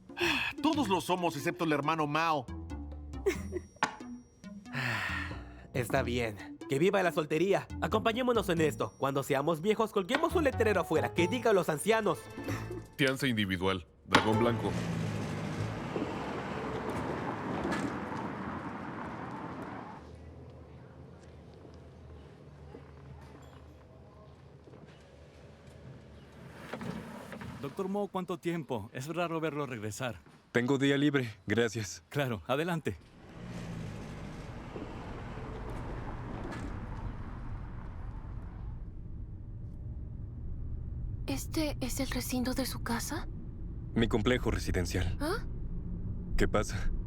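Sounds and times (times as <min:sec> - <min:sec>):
street traffic noise: 0:14.0 - 0:27.7, 0:33.0 - 0:47.0
car engine and road rumble: 0:14.1 - 0:22.6, 0:33.0 - 0:47.0.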